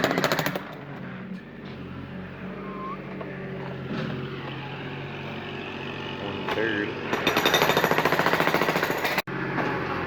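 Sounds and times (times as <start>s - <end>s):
jackhammer hammering concrete: 0.0s - 0.8s, 5.6s - 9.2s.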